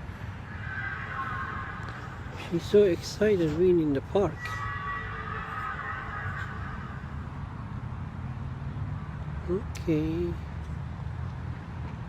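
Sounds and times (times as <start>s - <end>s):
faint high tones: 0.0s - 3.4s, 4.1s - 7.4s
low droning hum: 0.0s - 3.4s.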